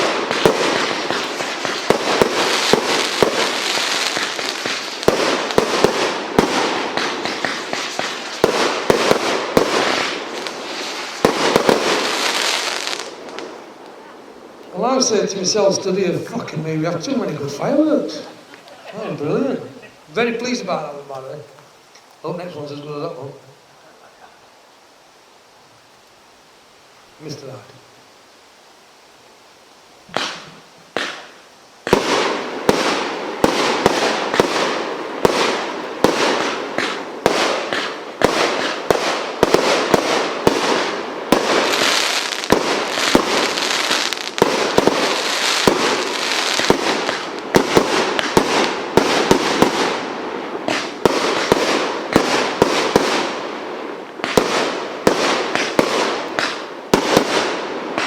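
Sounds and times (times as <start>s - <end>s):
firework barrage bangs: 0.0s - 13.2s, 30.1s - 58.0s
firework crackling: 0.0s - 26.2s, 29.1s - 58.0s.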